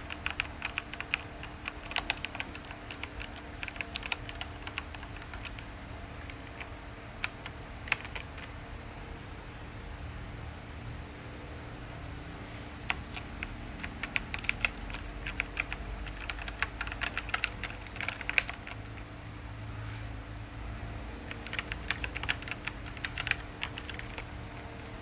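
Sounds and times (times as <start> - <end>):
mechanical keyboard key clicks: 0.0 - 8.5, 12.9 - 19.1, 21.3 - 24.6.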